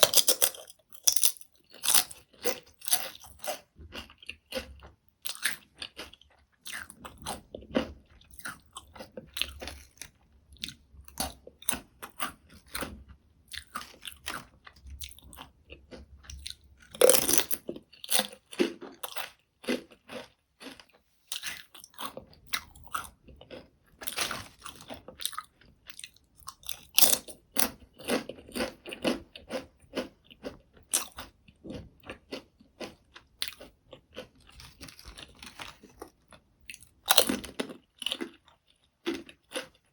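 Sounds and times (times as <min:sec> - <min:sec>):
potato chips crunching: 0:00.0 - 0:39.9.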